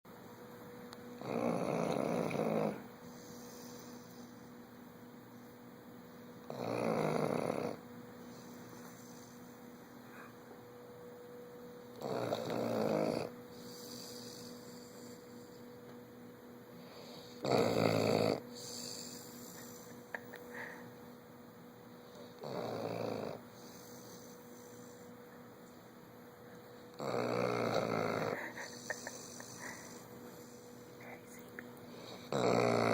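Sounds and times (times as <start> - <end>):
faint steady hum: 0.1 - 32.9
dog snoring: 1.2 - 4.3, 6.4 - 9.4, 11.9 - 15.6, 16.8 - 20.8, 22.0 - 25.1, 26.9 - 31.2, 31.9 - 32.9.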